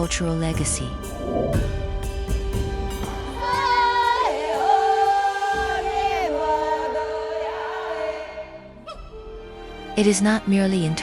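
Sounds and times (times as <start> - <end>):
sustained drone: 0.8 - 2.8
wordless singing: 2.8 - 9.0.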